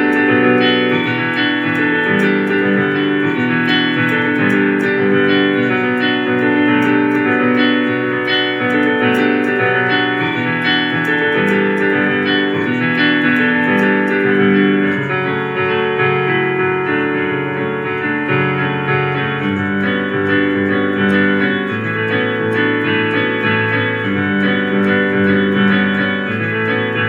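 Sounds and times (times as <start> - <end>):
guitar playing: 0.0 - 27.0
sustained keyboard chords: 0.0 - 27.0.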